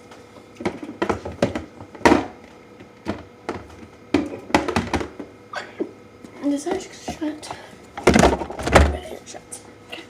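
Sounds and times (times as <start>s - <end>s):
items knocking in refrigerator door: 0.6s - 2.4s, 3.0s - 5.3s, 8.0s - 9.0s.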